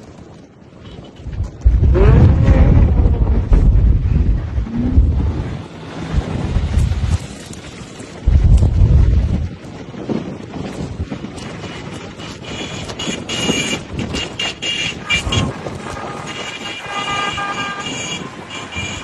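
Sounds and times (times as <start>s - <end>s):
traffic and street noise: 0.0s - 19.0s
vehicle horns sounding: 11.7s - 19.0s.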